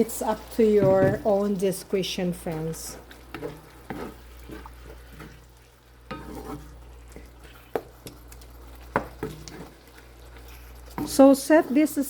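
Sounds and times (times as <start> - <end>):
meat sizzling in a pot: 0.0 - 12.0
utensil scraping a pot: 2.5 - 12.0.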